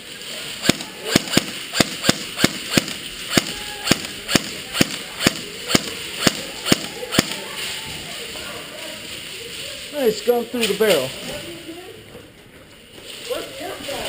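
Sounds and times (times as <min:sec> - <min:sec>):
airsoft gun shots: 0:00.6 - 0:07.5.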